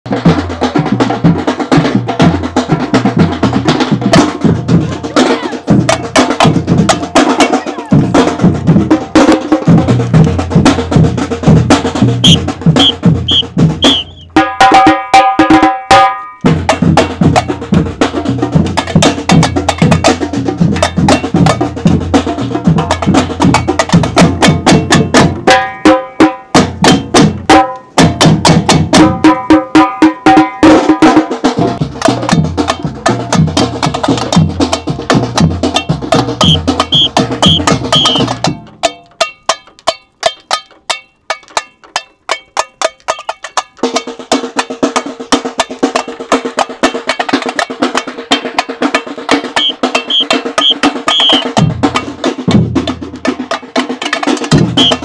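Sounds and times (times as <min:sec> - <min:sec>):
samba band drumming: 0:00.1 - 0:40.6, 0:42.3 - 0:55.0
short high notes: 0:12.2 - 0:14.3, 0:36.4 - 0:38.3, 0:49.5 - 0:51.6, 0:54.8 - 0:55.0
deep bass drums: 0:31.8 - 0:38.7.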